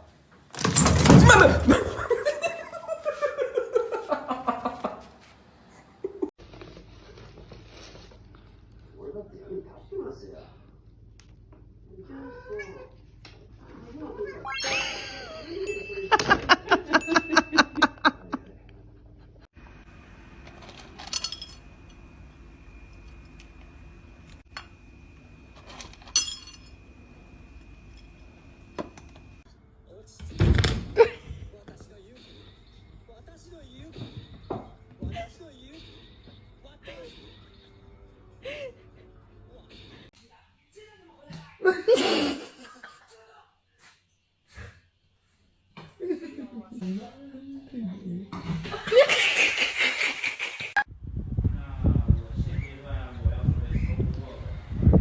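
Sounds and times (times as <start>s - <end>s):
person laughing hard: 14.6s - 19.5s, 48.7s - 50.8s
ringing clinks of hard objects: 15.6s - 17.7s, 21.0s - 21.6s, 26.0s - 26.8s
thin steady whine: 19.6s - 29.5s.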